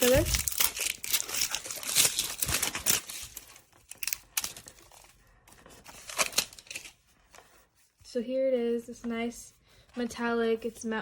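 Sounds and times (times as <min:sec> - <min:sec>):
packaging crinkling and rustling: 0:00.0 - 0:07.0.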